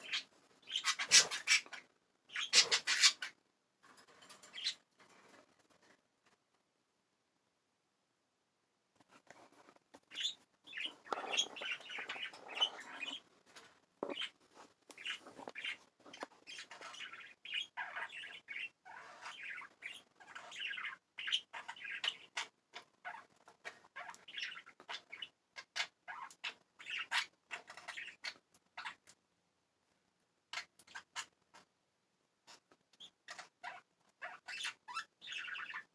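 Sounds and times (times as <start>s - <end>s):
budgerigars chirping and chattering: 0.0s - 3.4s, 4.2s - 4.8s, 10.0s - 13.2s, 14.1s - 14.4s, 15.0s - 29.1s, 30.5s - 31.7s, 32.5s - 35.9s.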